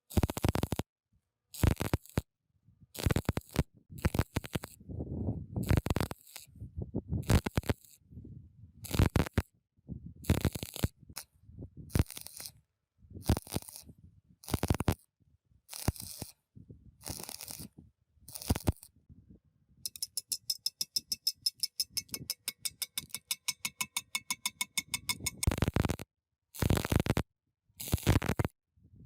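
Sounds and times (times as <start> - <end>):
rapid metallic clicking: 19.9 - 26.0
tool scraping metal: 19.9 - 26.0.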